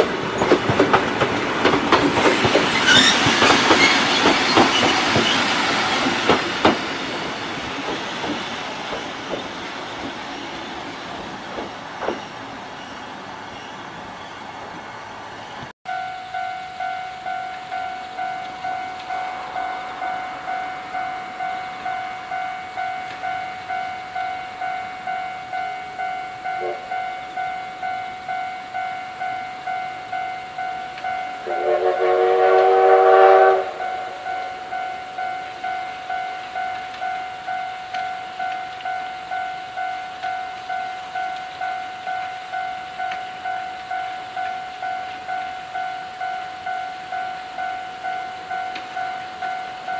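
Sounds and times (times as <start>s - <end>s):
level-crossing warning bell: 15.9s - 49.9s
steam locomotive whistle: 26.5s - 27.1s, 31.4s - 34.8s.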